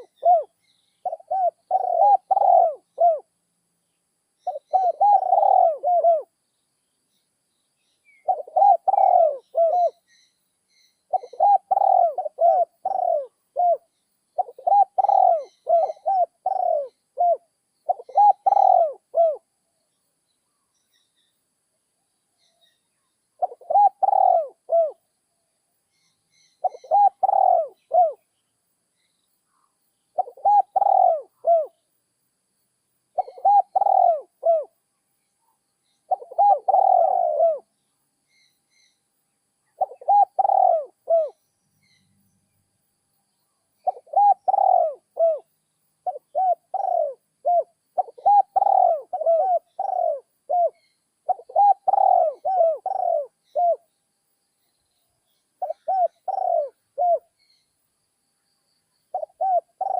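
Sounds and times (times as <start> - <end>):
dove cooing: 0.0 - 3.4, 4.4 - 6.4, 8.1 - 10.0, 11.1 - 19.5, 23.4 - 25.0, 26.6 - 28.2, 30.2 - 31.8, 33.2 - 34.7, 36.1 - 37.7, 39.8 - 41.4, 43.8 - 53.9, 55.6 - 57.3, 59.1 - 59.9.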